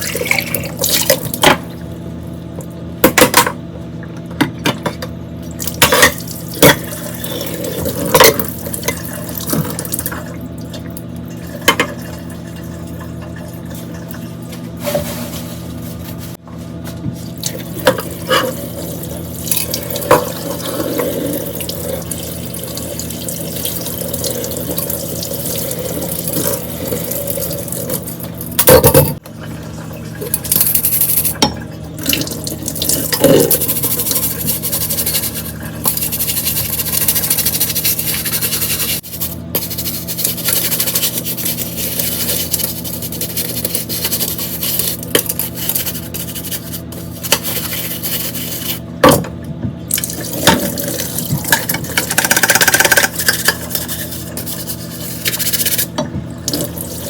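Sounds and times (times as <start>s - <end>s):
tap water running into sink: 49.9s - 53.7s.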